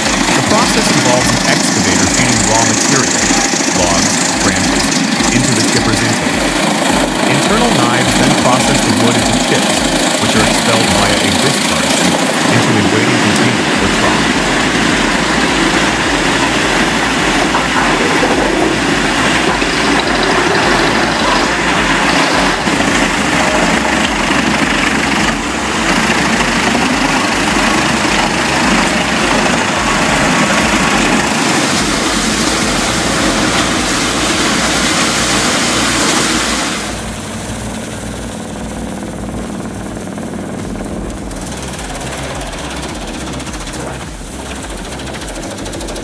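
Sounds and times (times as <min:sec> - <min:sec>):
wood chipper chipping branches: 0:00.0 - 0:46.0.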